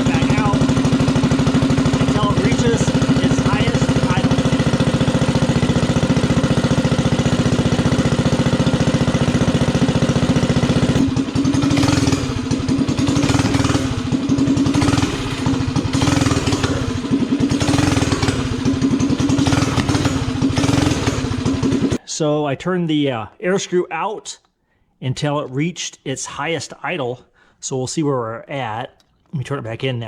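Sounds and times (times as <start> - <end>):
minibike engine idling: 0.0 - 22.0.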